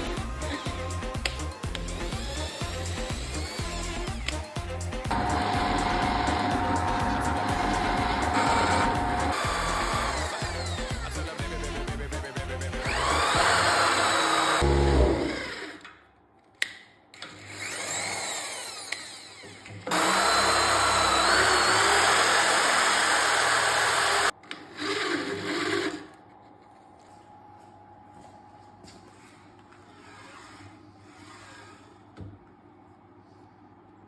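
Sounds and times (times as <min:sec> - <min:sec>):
background music: 0:00.0 - 0:15.4
power drill whining: 0:01.7 - 0:04.4, 0:05.1 - 0:11.2, 0:12.8 - 0:15.8, 0:17.3 - 0:26.2.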